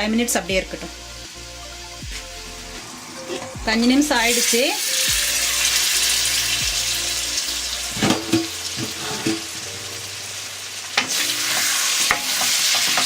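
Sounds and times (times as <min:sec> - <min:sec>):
meat sizzling in a pan: 0:02.1 - 0:13.0
spoon scraping and knocking pan: 0:07.9 - 0:09.8, 0:11.0 - 0:13.0.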